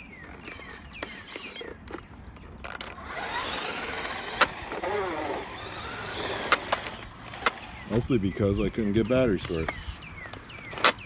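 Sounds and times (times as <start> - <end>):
toy car electric motor whirring: 0.2 - 2.0, 2.6 - 7.9, 9.4 - 11.0
tyres rolling: 0.2 - 8.1.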